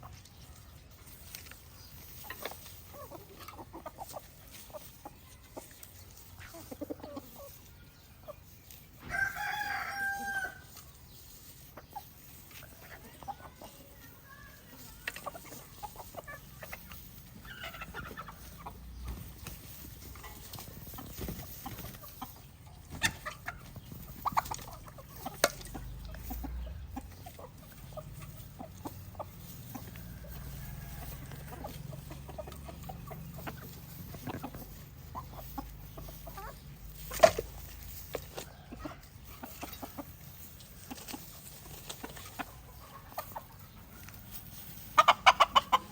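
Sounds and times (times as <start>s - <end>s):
chickens clucking: 0.0s - 45.9s
rooster crowing: 9.0s - 10.6s.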